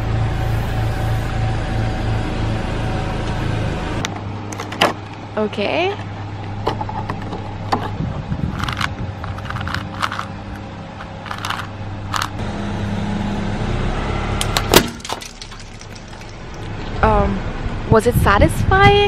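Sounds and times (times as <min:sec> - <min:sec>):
car engine running slowly: 0:00.0 - 0:17.9
tyre cracking and crunching objects: 0:14.4 - 0:16.8.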